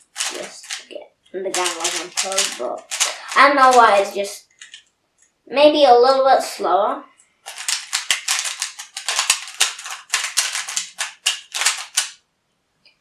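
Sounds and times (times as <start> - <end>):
puzzle cube clacking: 0.0 - 4.9, 7.4 - 12.2.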